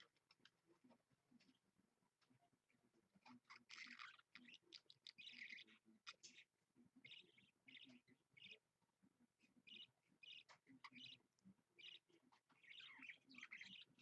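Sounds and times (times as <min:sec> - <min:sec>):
budgerigar chirping and warbling: 0:00.0 - 0:08.7, 0:09.4 - 0:14.0.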